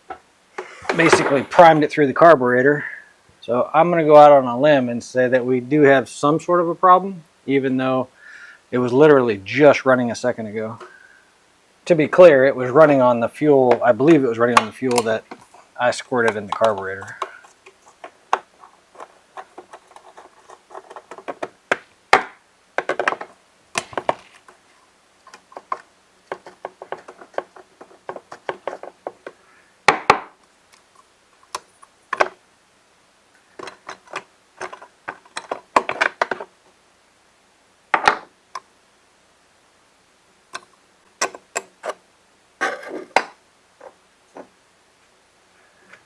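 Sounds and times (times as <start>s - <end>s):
hand tools and parts clattering: 0.1s - 1.8s, 13.7s - 29.4s, 33.5s - 36.5s, 42.6s - 44.5s.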